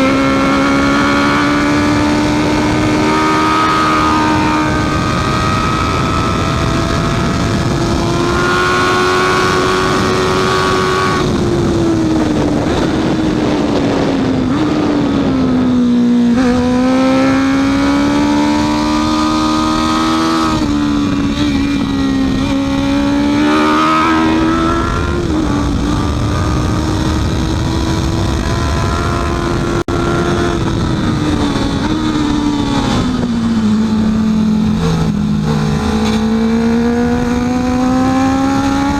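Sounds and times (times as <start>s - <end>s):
motorcycle engine revving hard: 0.0s - 38.9s.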